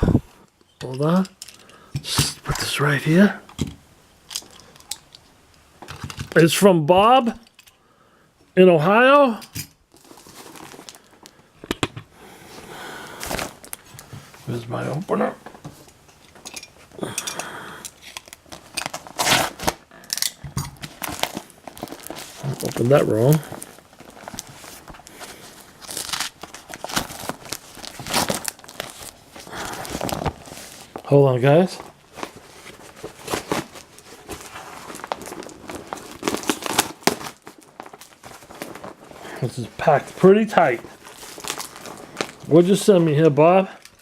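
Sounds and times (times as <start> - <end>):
packing material crinkling: 9.9 - 11.5, 12.4 - 44.0.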